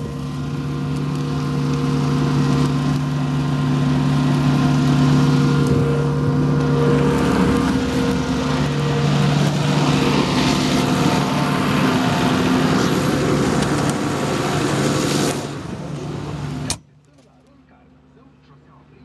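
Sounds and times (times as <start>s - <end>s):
tractor diesel engine running: 0.0s - 19.0s.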